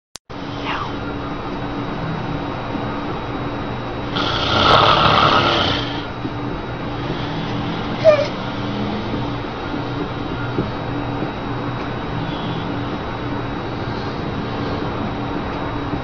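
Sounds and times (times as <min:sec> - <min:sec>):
steady low hum: 0:00.3 - 0:16.0
person snoring: 0:04.2 - 0:06.1.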